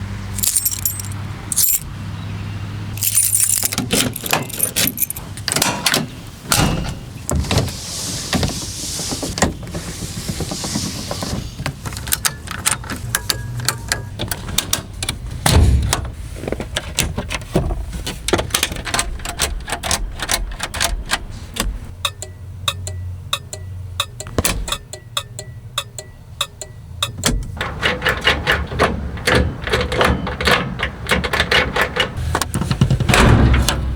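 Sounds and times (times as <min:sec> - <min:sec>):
truck engine hum: 0:00.0 - 0:18.0, 0:19.1 - 0:33.1
clicks and rattles: 0:00.4 - 0:01.9, 0:03.0 - 0:06.1.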